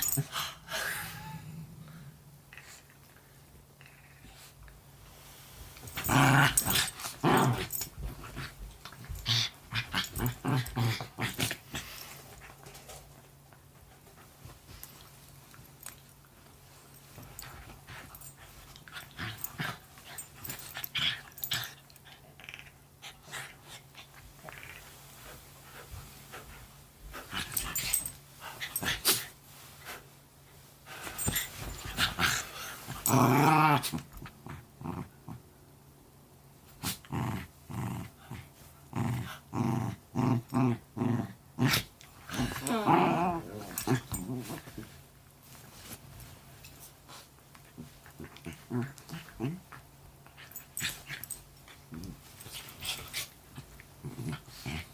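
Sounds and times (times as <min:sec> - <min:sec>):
rustling of bedding: 0:04.2 - 0:22.2, 0:23.0 - 0:34.6, 0:36.6 - 0:54.9
dogs growling: 0:05.9 - 0:12.0, 0:36.8 - 0:44.8.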